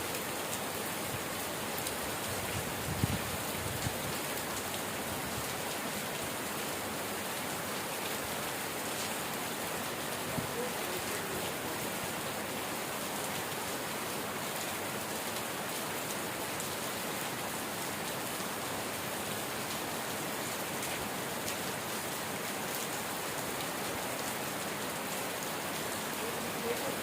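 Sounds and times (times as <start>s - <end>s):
steady rainfall hiss: 0.0s - 27.0s.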